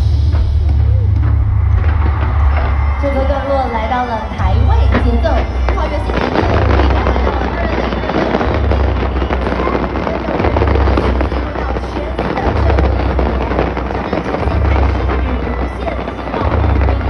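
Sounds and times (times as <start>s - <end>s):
deep low rumble: 0.0s - 17.0s
fireworks crackling: 0.0s - 17.0s
music playing: 0.0s - 17.0s.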